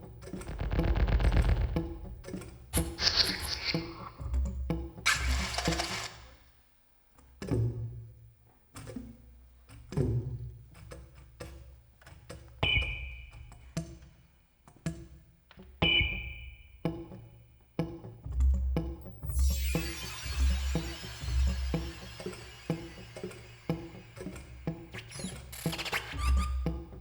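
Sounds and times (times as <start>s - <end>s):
scattered knocks and clicks: 0.0s - 6.3s
high held tones: 19.1s - 26.1s.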